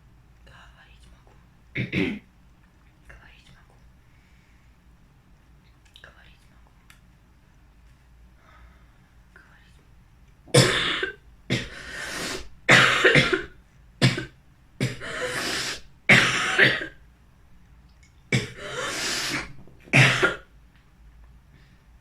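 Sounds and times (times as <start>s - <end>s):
woman coughing: 1.8s - 2.2s, 10.6s - 17.0s, 18.4s - 20.5s.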